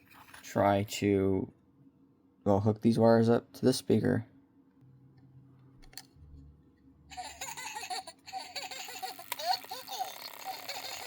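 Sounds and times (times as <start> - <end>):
toy electronic laugh: 7.1 - 11.0.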